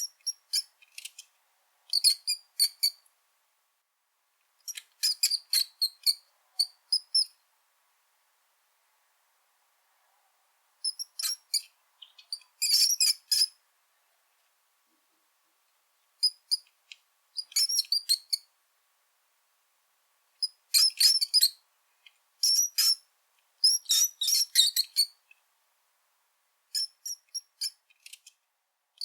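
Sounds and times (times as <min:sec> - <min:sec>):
rat squeaking: 0:10.8 - 0:13.6, 0:17.4 - 0:18.4, 0:22.4 - 0:23.0, 0:23.6 - 0:25.2, 0:26.8 - 0:28.2.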